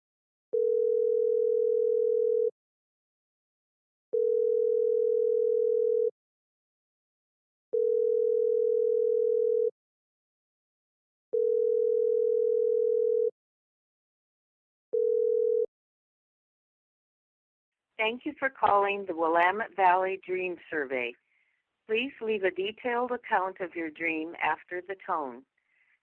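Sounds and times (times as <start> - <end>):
telephone ringback tone: 0.6 - 2.5, 4.2 - 6.1, 7.8 - 9.7, 11.4 - 13.3, 15.0 - 15.7.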